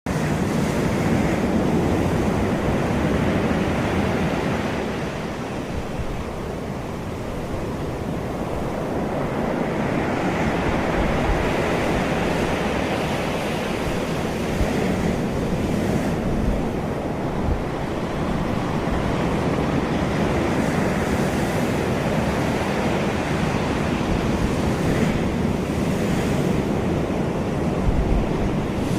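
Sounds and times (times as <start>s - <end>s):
wind: 0.0s - 28.9s
ocean surf washing: 0.1s - 28.9s.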